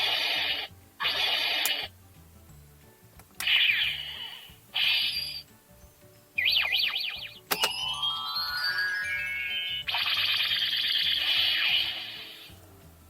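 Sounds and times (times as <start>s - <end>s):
falling sweeping chirps: 6.4s - 12.5s.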